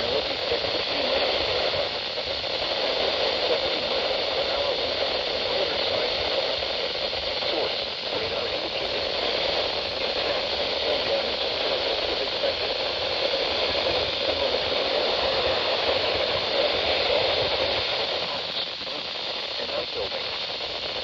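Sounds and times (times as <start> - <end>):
radio static hiss: 0.0 - 21.0.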